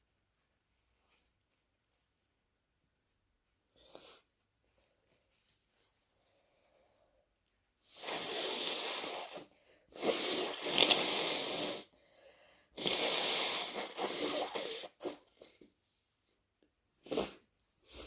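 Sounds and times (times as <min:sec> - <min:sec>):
faint sniffs: 0:03.7 - 0:05.4, 0:07.8 - 0:15.8, 0:17.0 - 0:18.0
wet nose blows: 0:07.9 - 0:12.0, 0:12.8 - 0:15.4, 0:17.0 - 0:18.0.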